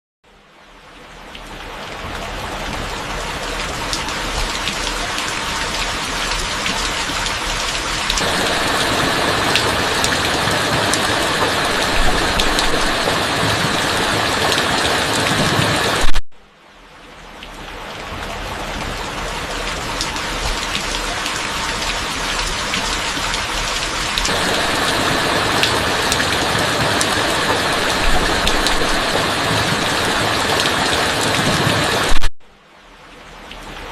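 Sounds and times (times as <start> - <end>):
rain falling: 0.4 - 33.9.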